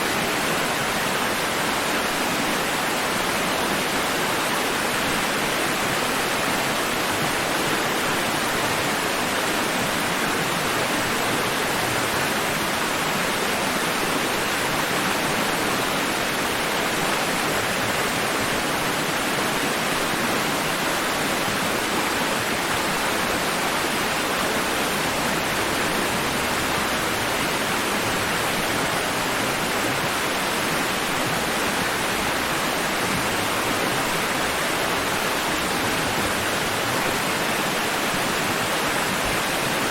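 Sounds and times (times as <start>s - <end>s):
steady rushing noise: 25.1s - 39.9s.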